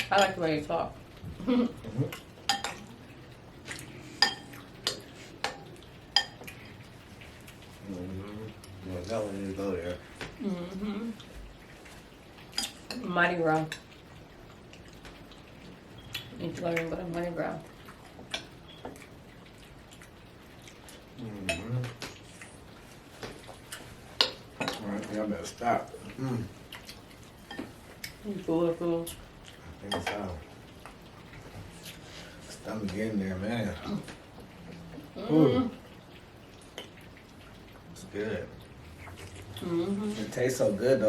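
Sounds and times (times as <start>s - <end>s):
spoon clinking against a bowl: 4.2s - 6.5s
person humming mm: 10.4s - 11.2s, 39.6s - 40.2s.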